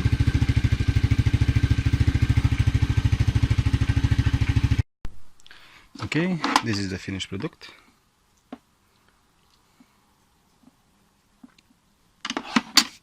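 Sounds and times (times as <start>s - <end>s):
motorcycle engine idling: 0.0s - 4.8s.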